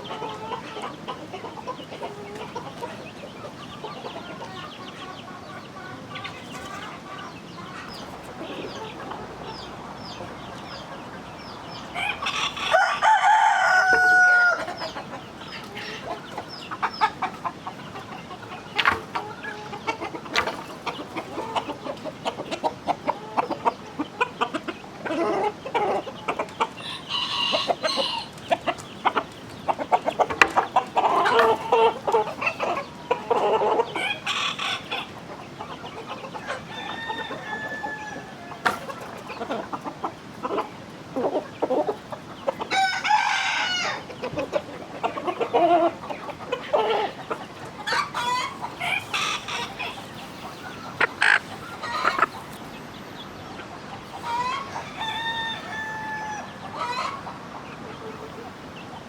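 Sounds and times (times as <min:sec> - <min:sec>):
chickens clucking: 0:00.0 - 0:59.0
rooster crowing: 0:11.9 - 0:14.7, 0:36.5 - 0:38.6, 0:42.7 - 0:44.0, 0:54.2 - 0:57.1.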